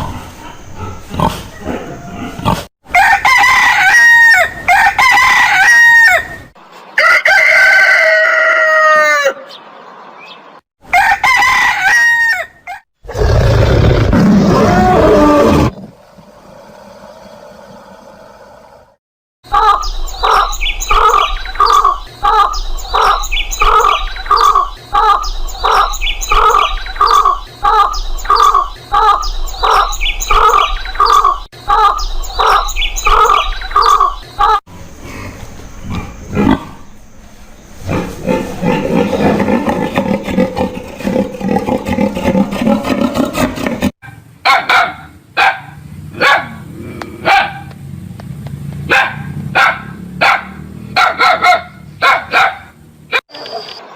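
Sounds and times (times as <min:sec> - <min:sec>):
animal calls: 0:19.5 - 0:35.2.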